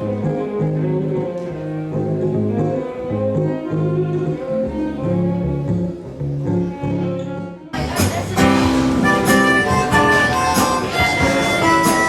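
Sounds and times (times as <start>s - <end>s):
instrumental music with held notes: 0.0s - 12.0s
stepping bass line: 7.8s - 12.0s.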